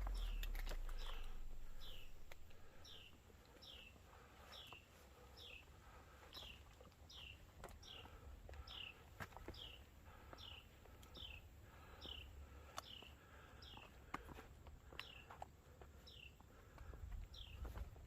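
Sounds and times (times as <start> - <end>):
songbird whistling downward note: 0.0 - 3.1
woodland background: 0.0 - 18.0.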